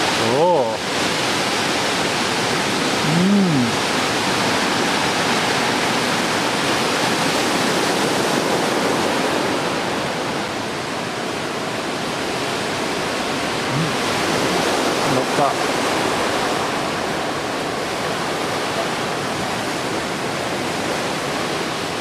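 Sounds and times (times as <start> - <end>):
heavy surf roaring: 0.0 - 22.0
man exclaiming ooh: 3.0 - 3.8, 13.7 - 14.0.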